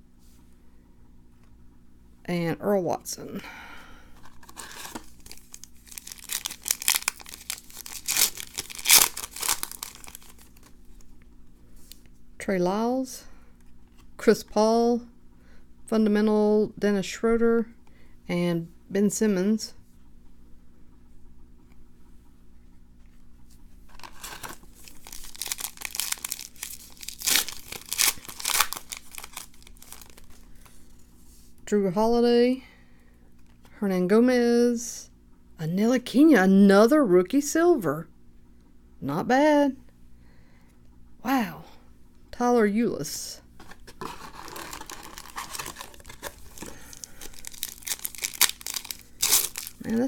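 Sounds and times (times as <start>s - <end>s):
plastic wrapper crinkling: 4.2s - 11.1s, 23.9s - 30.8s, 43.6s - 50.0s.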